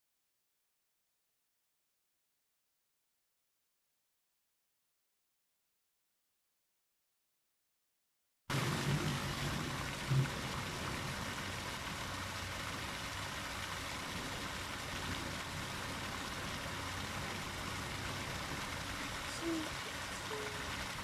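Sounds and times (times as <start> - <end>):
water fountain splashing: 8.5 - 21.0.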